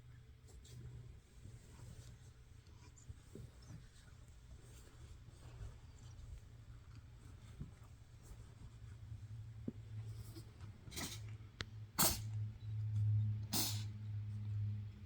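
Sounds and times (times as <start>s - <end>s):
cat sneezing: 10.9s - 11.3s, 12.0s - 12.4s, 13.4s - 13.9s.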